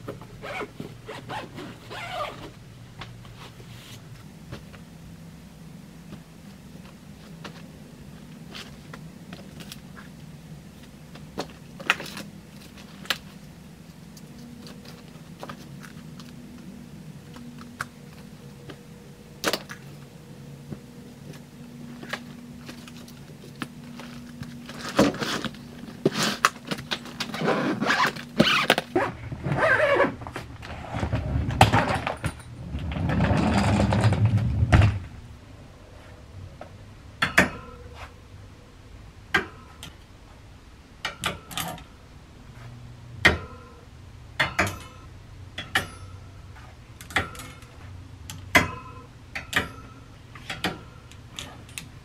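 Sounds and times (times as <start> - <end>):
steady low hum: 0.0 - 52.0
objects clattering: 20.7 - 29.5, 30.2 - 35.1
rustling: 20.8 - 35.1.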